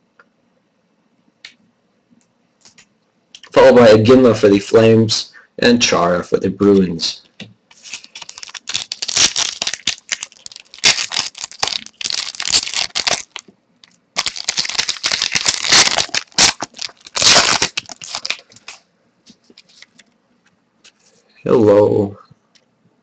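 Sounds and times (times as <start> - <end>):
wrapper tearing and crinkling: 7.7 - 18.8.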